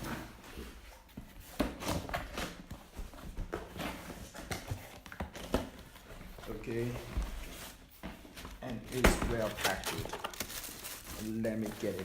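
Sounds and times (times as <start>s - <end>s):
cardboard box being handled: 3.5s - 12.0s.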